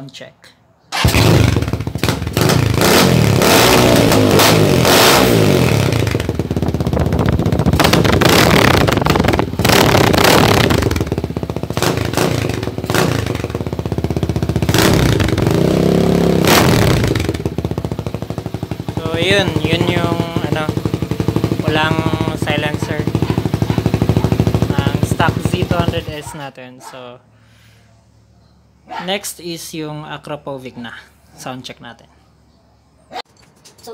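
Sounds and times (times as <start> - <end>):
motorcycle engine revving: 0.9 - 26.5.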